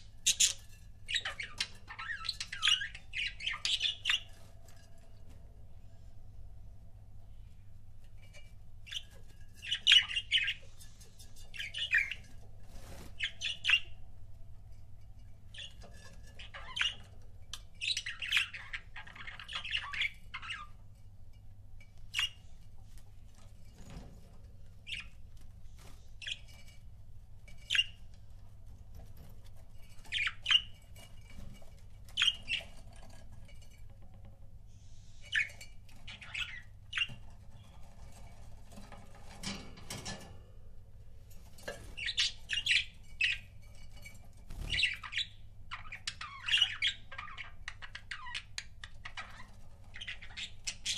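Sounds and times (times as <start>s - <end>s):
faint low hum: 0.0s - 50.9s
budgerigars chirping and squawking: 0.2s - 4.5s, 8.9s - 14.0s, 15.5s - 20.8s, 24.9s - 25.2s, 25.9s - 26.6s, 27.7s - 28.0s, 29.9s - 33.2s, 34.8s - 40.0s, 41.6s - 43.7s, 44.5s - 50.9s.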